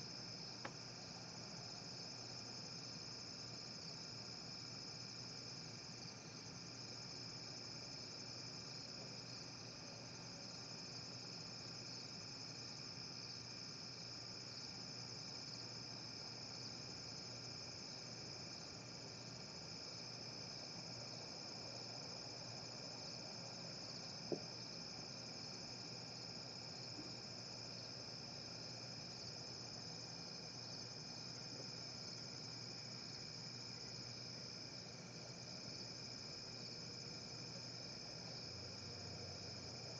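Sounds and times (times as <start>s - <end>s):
crickets chirring: 0.0s - 39.9s.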